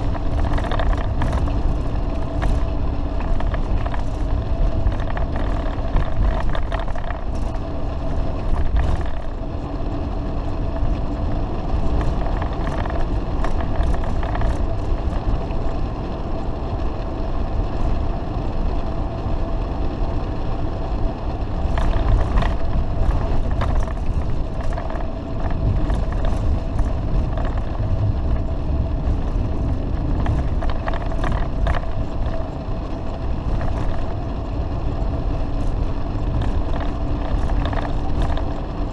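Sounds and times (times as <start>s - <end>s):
short rattles: 0.0s - 7.5s
motorhome diesel engine droning: 0.0s - 38.9s
road noise: 0.0s - 38.9s.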